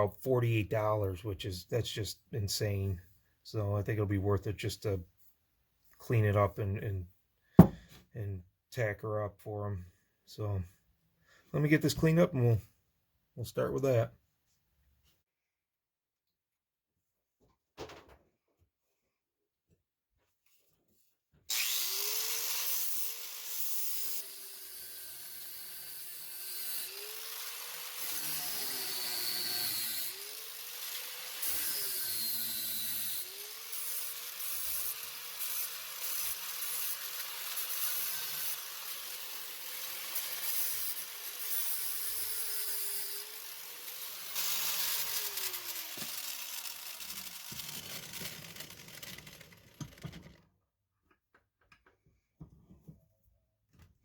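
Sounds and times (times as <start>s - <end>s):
electric grinder on metal: 21.5s - 50.3s.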